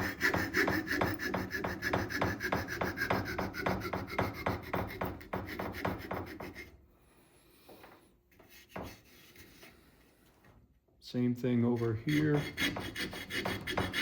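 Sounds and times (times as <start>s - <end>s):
hand saw cutting wood: 0.0s - 6.8s, 11.6s - 14.0s.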